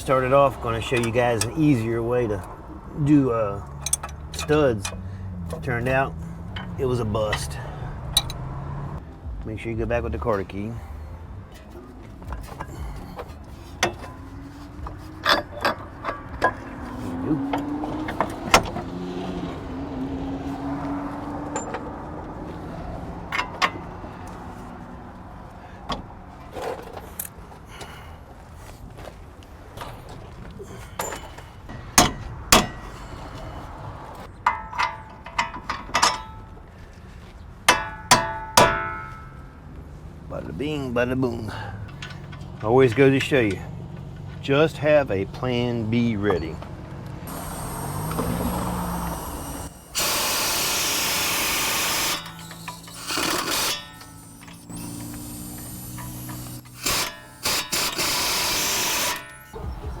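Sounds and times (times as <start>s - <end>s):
hammer striking steel: 31.7s - 32.9s, 37.7s - 39.4s
pressurised hissing bursts: 47.3s - 53.2s.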